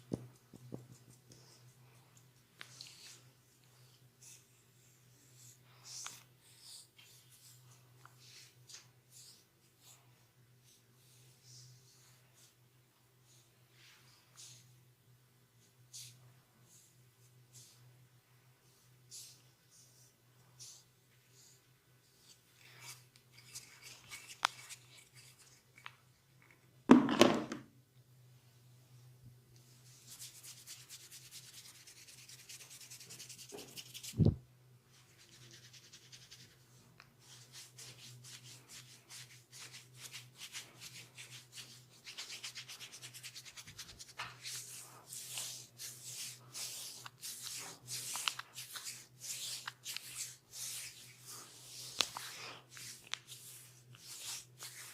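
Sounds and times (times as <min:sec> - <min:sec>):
hands rubbing skin and hair: 0:00.0 - 0:04.6, 0:05.8 - 0:10.0, 0:22.2 - 0:26.5, 0:29.7 - 0:54.9.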